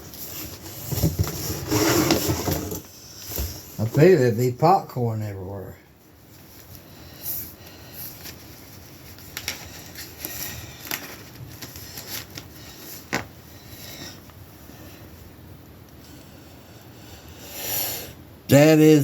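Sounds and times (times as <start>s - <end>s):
rustling packing peanuts: 7.9s - 14.2s.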